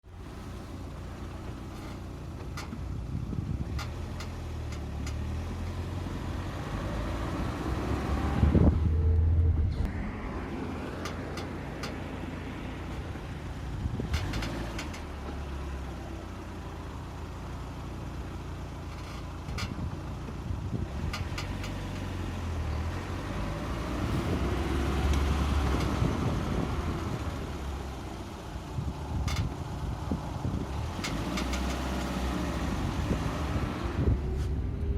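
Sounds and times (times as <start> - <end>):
car running noise: 0.0 - 34.9
suspension creaks: 1.6 - 2.8, 6.8 - 15.5, 18.8 - 19.9, 21.0 - 22.8, 24.0 - 26.3, 29.1 - 34.9.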